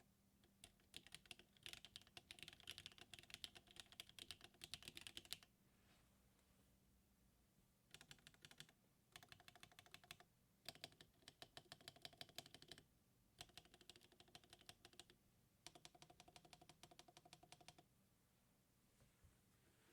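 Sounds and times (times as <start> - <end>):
mechanical keyboard typing: 0.6 - 5.4, 7.9 - 12.8, 13.4 - 17.8.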